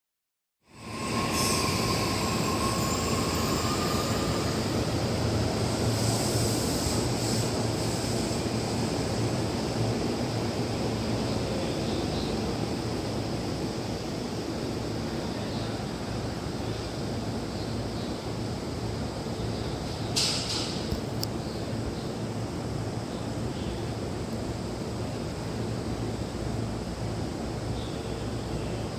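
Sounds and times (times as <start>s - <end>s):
electric train pulling out: 0.7s - 9.6s.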